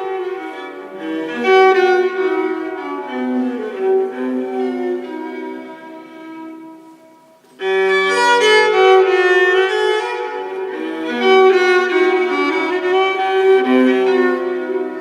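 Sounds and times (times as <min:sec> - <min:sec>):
violin melody over held strings: 0:00.0 - 0:15.0.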